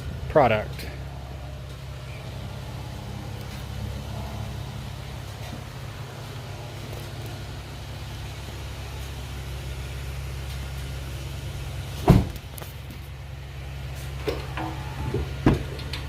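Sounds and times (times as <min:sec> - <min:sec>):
engine idling: 0:00.0 - 0:16.0
sharp thump: 0:12.0 - 0:12.4.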